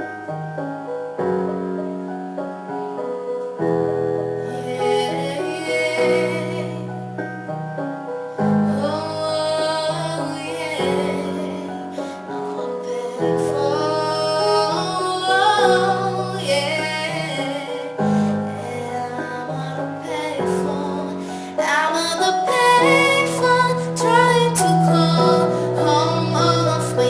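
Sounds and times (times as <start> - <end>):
piano chords: 0.0 - 27.0
woman singing: 4.4 - 7.1, 8.6 - 27.0.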